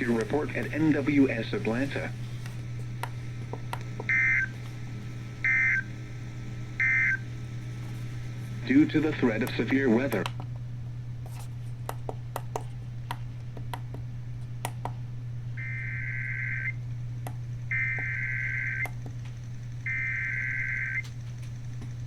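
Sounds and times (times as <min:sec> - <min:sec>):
clicks: 0:00.0 - 0:05.1, 0:08.9 - 0:10.5, 0:17.2 - 0:19.4
low hum: 0:00.0 - 0:22.0
buzzy digital data bursts: 0:04.0 - 0:10.1, 0:15.6 - 0:16.9, 0:17.6 - 0:21.0.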